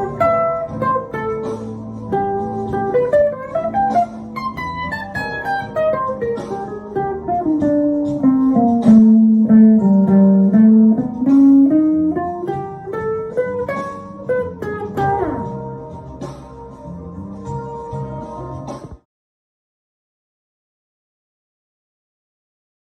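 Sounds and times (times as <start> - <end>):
electric guitar lead lines: 0.0 - 16.2
backing track of held chords: 0.0 - 19.0.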